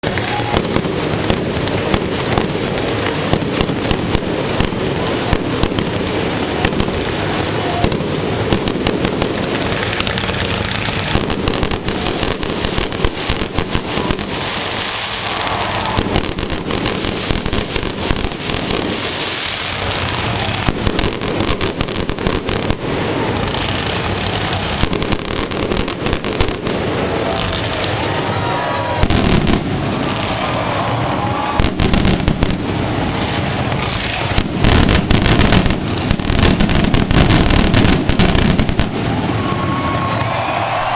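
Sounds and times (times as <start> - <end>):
fireworks bangs and crackling: 0.0 - 40.9.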